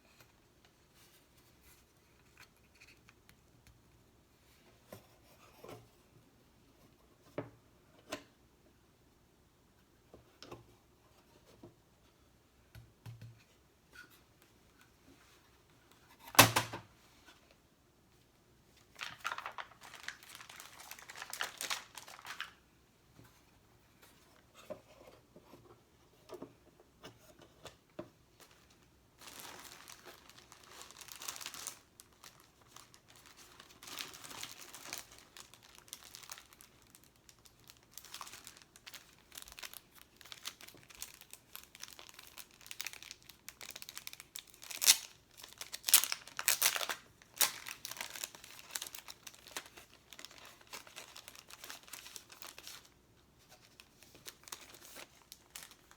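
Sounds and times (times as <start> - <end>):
stickers crinkling and peeling: 19.0 - 22.6, 29.2 - 52.9, 53.7 - 55.9.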